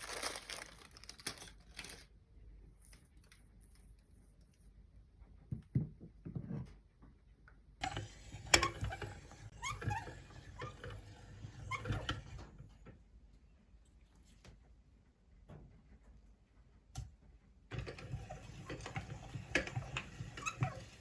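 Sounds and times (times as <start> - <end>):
meat grinder wet crackling: 7.8 - 12.6, 17.7 - 21.0.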